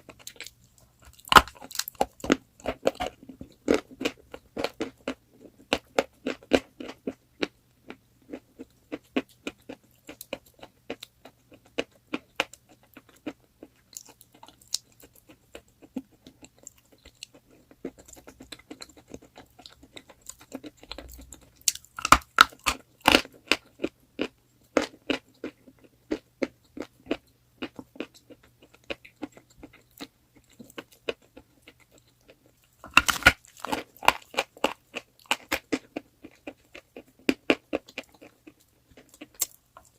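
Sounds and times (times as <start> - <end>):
chewing crunchy chalk: 8.3 - 39.9.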